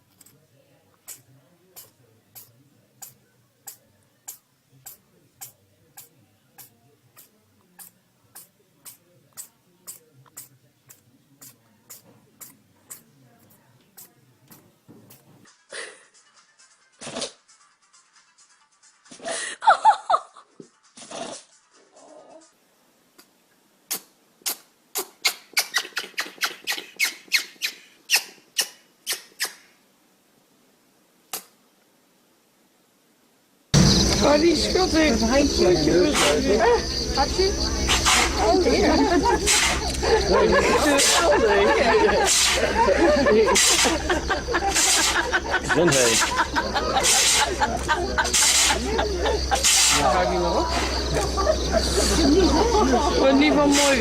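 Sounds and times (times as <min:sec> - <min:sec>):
small animal sneezing: 0:01.0 - 0:13.1, 0:17.0 - 0:17.4, 0:21.0 - 0:21.5, 0:23.9 - 0:29.7, 0:37.9 - 0:38.4, 0:39.5 - 0:39.9, 0:42.2 - 0:42.6, 0:43.5 - 0:44.0, 0:44.7 - 0:45.2, 0:47.0 - 0:47.5, 0:48.3 - 0:48.8, 0:49.6 - 0:50.0.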